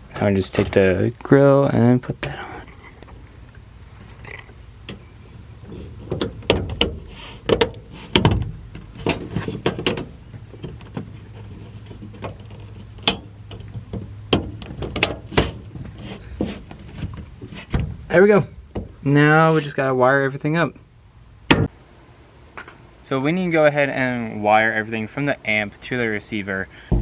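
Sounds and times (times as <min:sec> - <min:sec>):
speaker grille clicking and knocking: 0:06.0 - 0:19.0.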